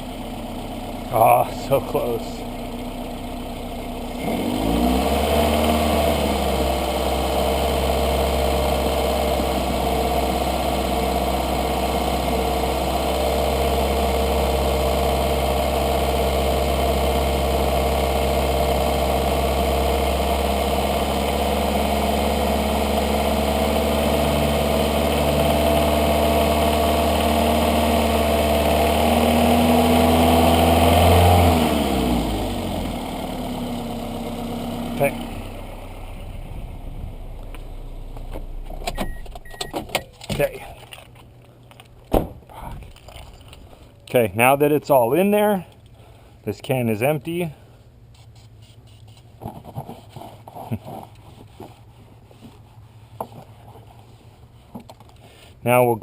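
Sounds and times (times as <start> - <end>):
car engine revving: 0.0 - 39.6.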